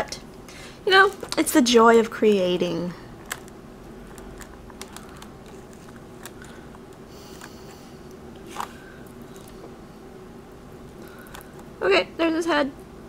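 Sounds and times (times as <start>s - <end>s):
low hum: 0.0s - 13.0s
plastic tray crinkling: 3.2s - 7.6s.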